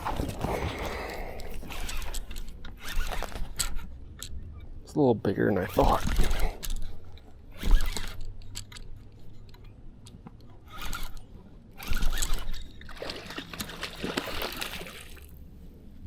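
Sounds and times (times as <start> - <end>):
fish thrashing water splashing: 11.9 - 15.4.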